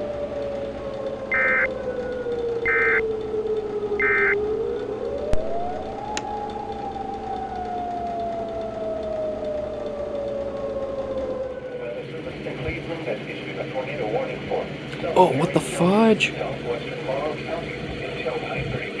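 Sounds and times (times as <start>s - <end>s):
warning siren: 0.0s - 9.6s.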